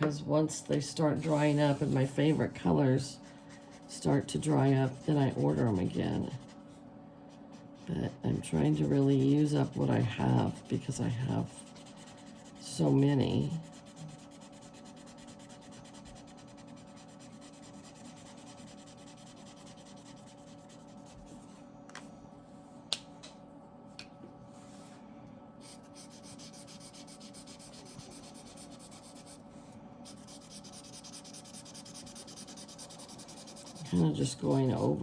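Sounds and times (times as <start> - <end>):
marker rubbing on paper: 1.2 - 2.6, 25.6 - 29.4, 30.1 - 35.0.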